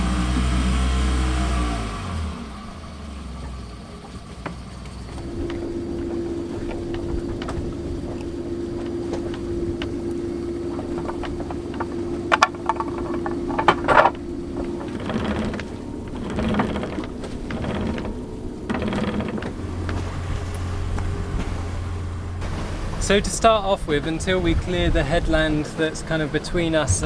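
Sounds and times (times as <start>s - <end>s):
boat engine running: 0.0s - 27.0s
sharp clicks and knocks: 3.4s - 21.1s
steady hum: 4.8s - 27.0s.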